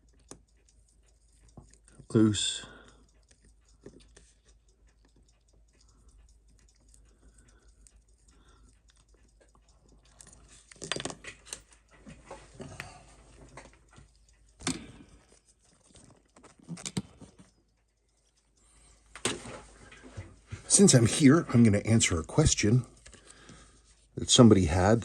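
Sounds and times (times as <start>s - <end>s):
small tool clicks and taps: 2.8s - 20.0s.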